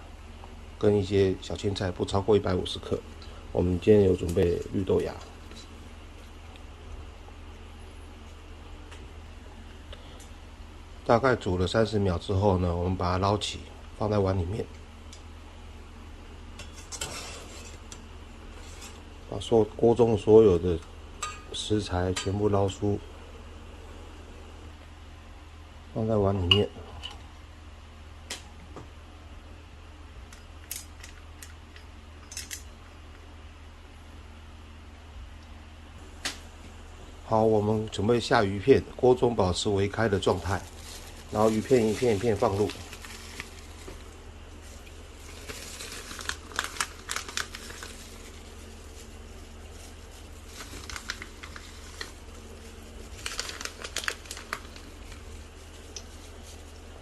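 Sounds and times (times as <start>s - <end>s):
low steady hum: 0.0s - 57.0s.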